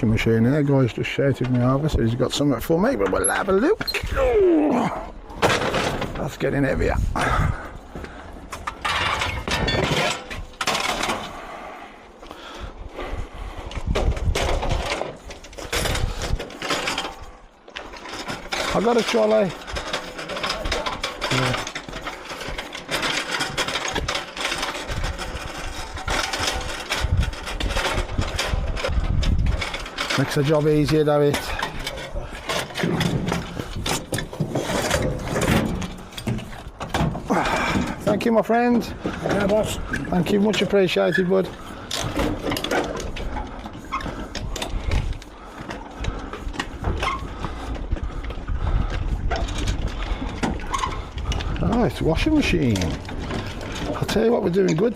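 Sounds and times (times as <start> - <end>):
hand trolley rattling over pavement: 4.8 - 11.4, 13.4 - 54.9.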